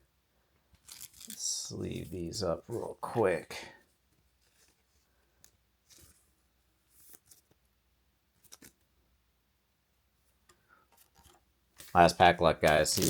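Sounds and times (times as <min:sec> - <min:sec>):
cards sliding into plastic sleeves: 0:00.8 - 0:02.1, 0:11.0 - 0:13.0.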